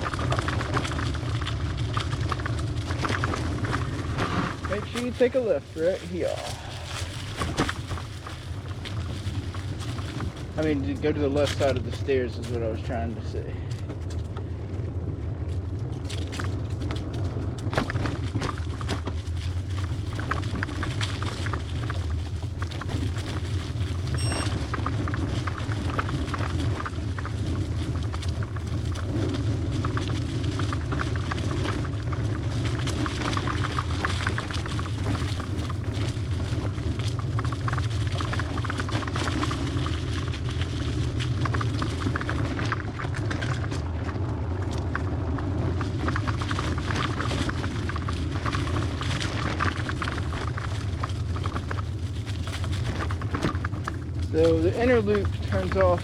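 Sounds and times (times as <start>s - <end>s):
wind and tyre rumble: 0.0s - 56.0s
high squeak: 24.2s - 24.5s
bike clicks and rattles: 51.4s - 56.0s.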